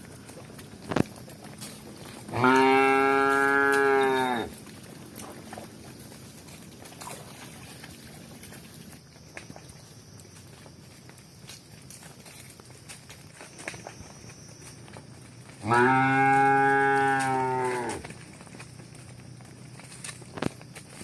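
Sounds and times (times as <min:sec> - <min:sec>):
cow mooing: 0:02.3 - 0:04.6, 0:15.6 - 0:18.1.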